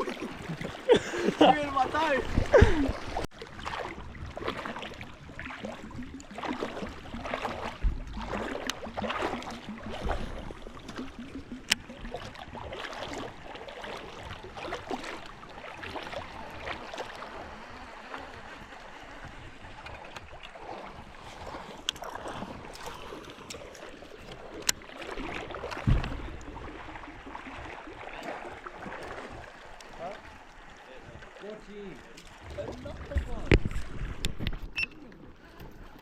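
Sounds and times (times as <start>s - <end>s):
moving water: 0.0s - 36.0s
dull thump: 25.8s - 26.4s.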